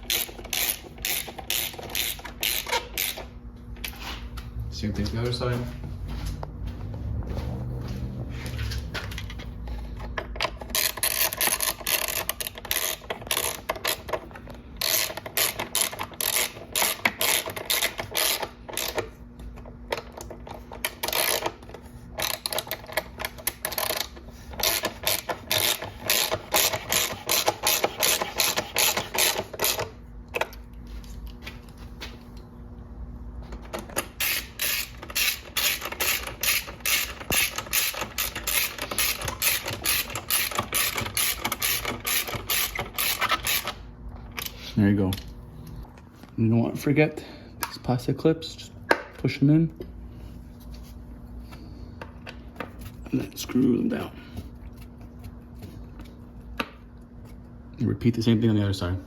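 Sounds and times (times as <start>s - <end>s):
ratcheting wrench clicking: 0.0s - 3.3s, 10.5s - 19.1s, 20.7s - 21.6s, 22.2s - 29.9s, 33.8s - 43.8s.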